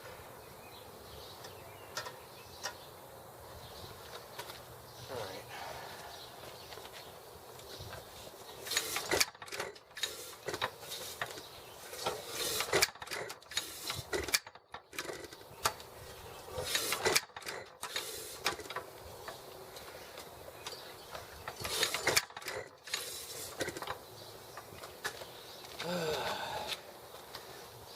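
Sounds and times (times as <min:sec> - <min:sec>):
metallic clicking and clattering: 0:08.6 - 0:15.9, 0:16.6 - 0:19.4, 0:20.2 - 0:25.8.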